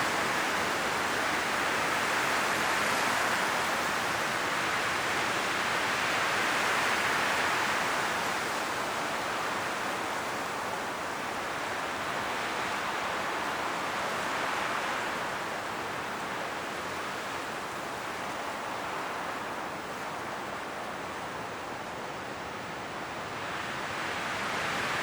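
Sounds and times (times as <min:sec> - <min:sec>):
strong wind through trees: 0:00.0 - 0:25.0.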